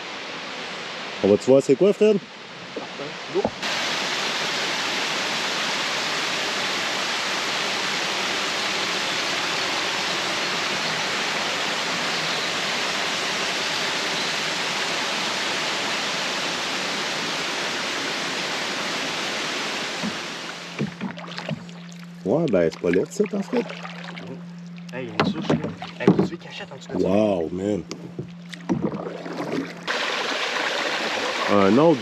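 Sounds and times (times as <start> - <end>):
small waterfall rushing: 0.0 - 20.8, 29.9 - 32.0.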